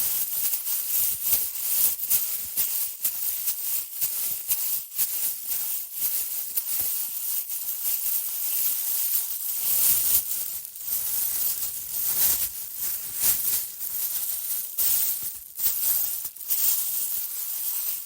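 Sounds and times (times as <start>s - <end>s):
plastic bag crinkling: 8.4s - 18.0s.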